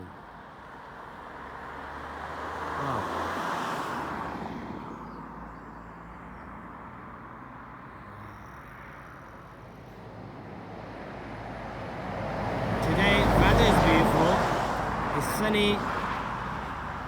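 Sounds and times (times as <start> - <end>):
distant traffic rumble: 8.4 - 17.0
vehicle passing: 12.2 - 17.0.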